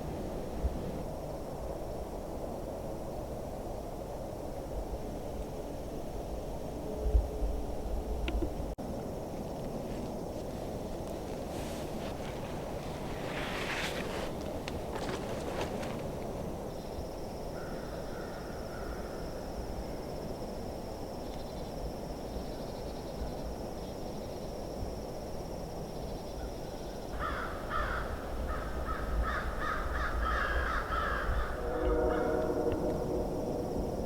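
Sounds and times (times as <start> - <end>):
gusty wind on microphone: 0.0 - 8.8, 9.7 - 17.2, 27.5 - 34.0
crows cawing: 27.2 - 33.0.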